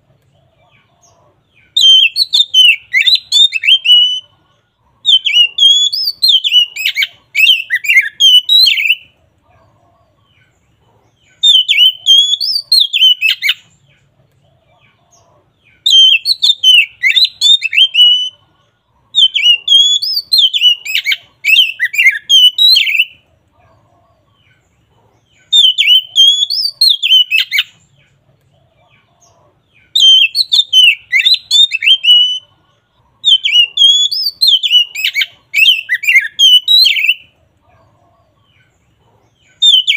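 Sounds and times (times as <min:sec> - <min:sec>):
bird singing whistled trills: 0:01.6 - 0:04.3, 0:05.0 - 0:09.2, 0:11.2 - 0:13.8, 0:15.7 - 0:18.4, 0:19.1 - 0:23.2, 0:25.3 - 0:27.8, 0:29.7 - 0:32.5, 0:33.2 - 0:37.3, 0:39.4 - 0:39.9.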